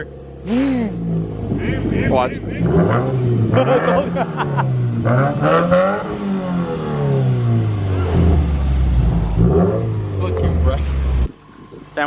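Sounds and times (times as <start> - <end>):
car engine revving: 2.6 - 10.2.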